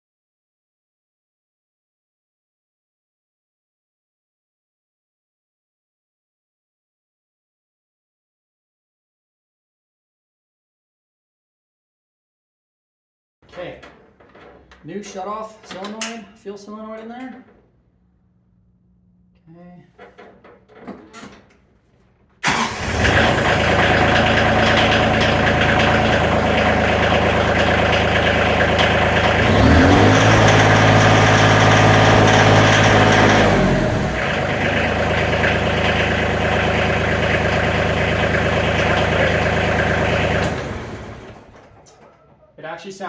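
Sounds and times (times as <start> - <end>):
tractor engine starting and running: 13.5 - 17.7, 22.4 - 42.8.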